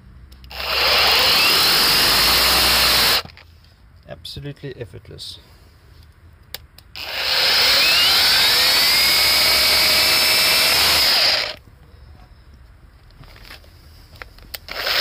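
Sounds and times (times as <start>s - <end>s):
rotary hammer drilling into concrete: 0.4s - 3.3s, 7.0s - 11.6s, 14.6s - 15.0s.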